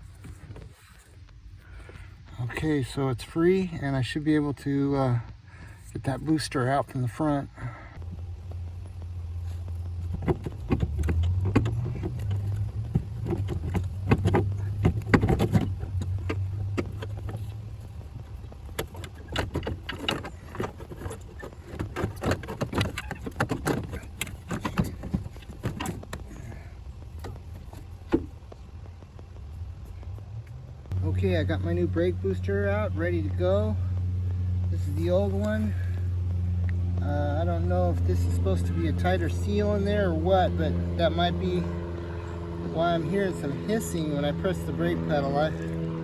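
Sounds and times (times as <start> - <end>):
steady low hum: 0.0 - 46.0
metallic clunks and rattles: 9.4 - 26.5.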